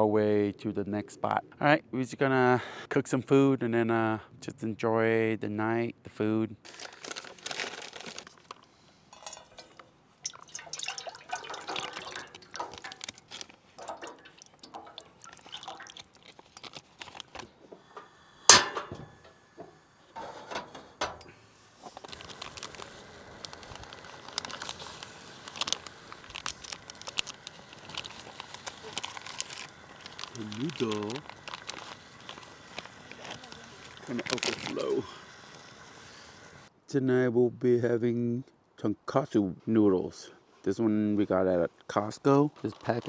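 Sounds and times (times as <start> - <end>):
rustling packaging: 6.7 - 17.7, 21.8 - 36.2, 42.4 - 43.0
pot hissing with light crackling: 8.2 - 36.7, 42.2 - 43.0
liquid dripping and pouring: 9.1 - 17.4, 22.1 - 35.9.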